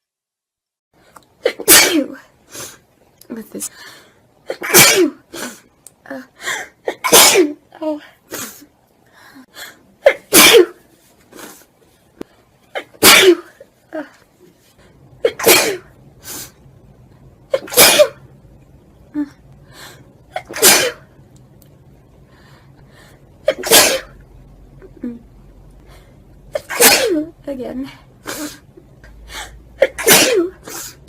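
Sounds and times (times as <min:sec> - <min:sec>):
person sneezing: 0:01.4 - 0:02.2, 0:04.5 - 0:05.6, 0:06.5 - 0:07.6, 0:10.0 - 0:10.8, 0:12.8 - 0:13.6, 0:15.2 - 0:15.9, 0:17.5 - 0:18.2, 0:20.3 - 0:21.0, 0:23.5 - 0:24.1, 0:26.5 - 0:27.2, 0:29.3 - 0:31.0.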